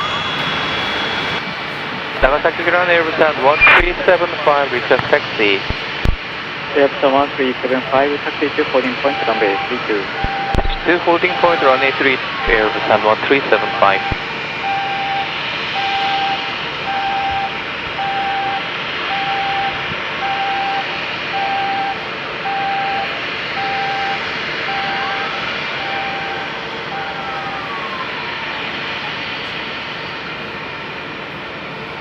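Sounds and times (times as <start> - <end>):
jet engines running: 0.0 - 32.0
repeating electronic beep: 3.4 - 4.1, 9.0 - 12.8.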